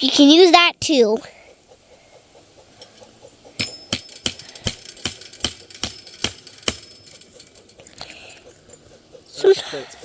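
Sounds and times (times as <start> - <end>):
hammer striking fence staple: 3.6 - 7.0.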